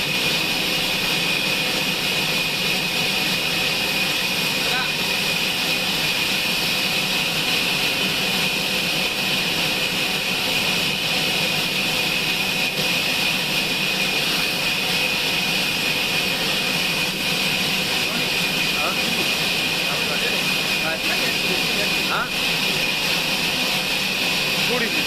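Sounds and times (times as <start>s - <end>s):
sawmill saw whining: 0.0s - 25.0s.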